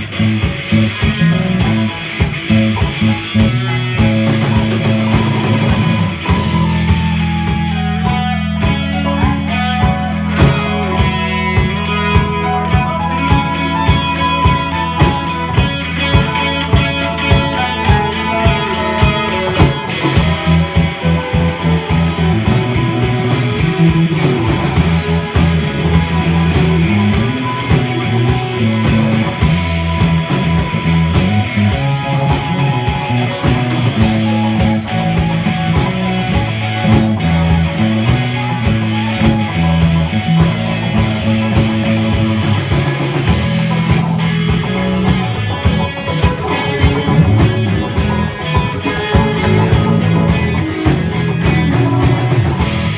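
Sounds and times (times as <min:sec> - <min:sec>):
bass line: 0:00.0 - 0:52.9
guitar riffing: 0:00.0 - 0:52.9
steady drum beat: 0:00.0 - 0:52.9.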